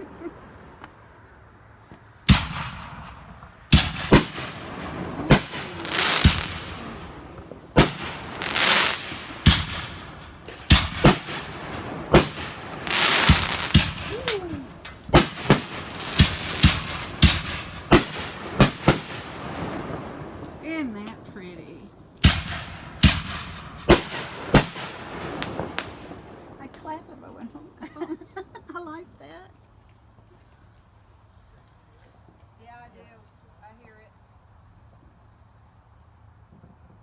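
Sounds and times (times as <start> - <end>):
fireworks bangs: 2.2 - 27.6
firework whistles: 2.3 - 20.5
hissing crackle: 2.3 - 27.4.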